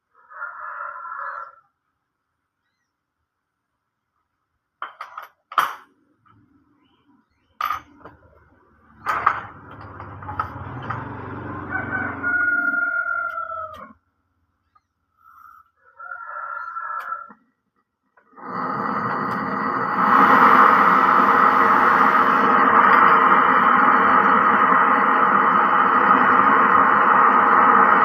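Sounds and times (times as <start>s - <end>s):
rooster crowing: 0.1s - 1.7s, 11.4s - 14.0s, 15.6s - 17.4s
low hum: 18.4s - 28.0s.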